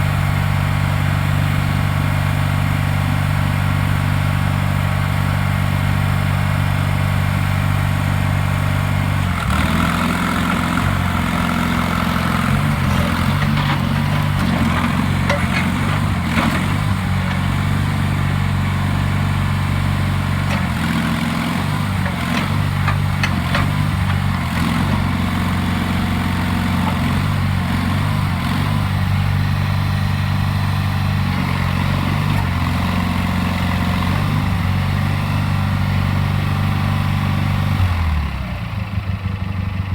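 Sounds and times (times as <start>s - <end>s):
loader engine running: 0.0s - 39.9s
metal clanks: 12.2s - 18.5s.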